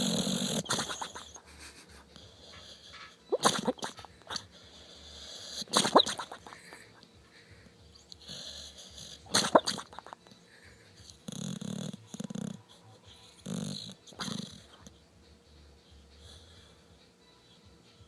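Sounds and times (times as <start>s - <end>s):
dog snoring: 0.0s - 1.5s, 2.1s - 6.9s, 8.2s - 10.2s, 11.0s - 15.0s, 15.9s - 16.8s.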